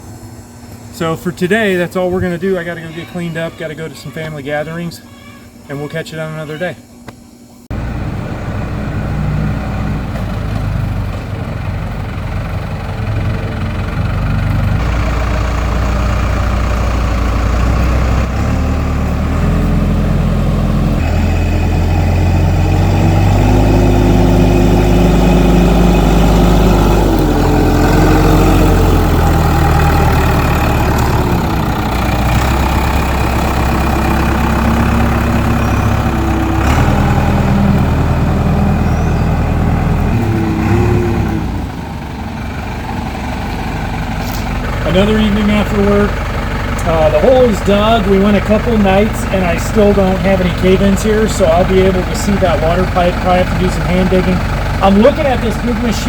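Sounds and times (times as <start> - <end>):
digging machine engine running: 7.7 - 56.0.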